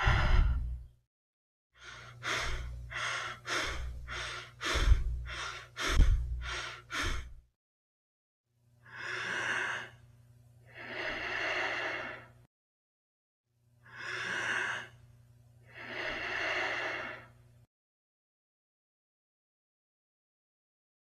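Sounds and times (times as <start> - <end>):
breathing in and out: 0.0 - 0.9, 1.8 - 7.6, 8.8 - 12.5, 13.8 - 17.4
low hum: 0.0 - 1.0, 1.8 - 7.5.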